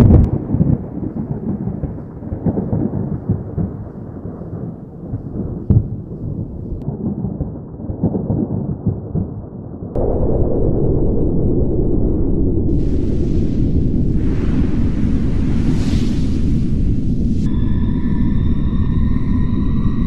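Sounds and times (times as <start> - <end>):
deep continuous rumbling: 9.8 - 20.0.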